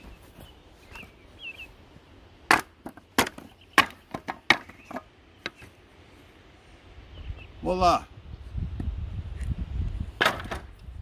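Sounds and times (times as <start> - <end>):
wooden pallet being struck: 2.5 - 5.6, 10.2 - 10.7
sharp wooden cracks: 2.5 - 5.7, 10.2 - 10.8.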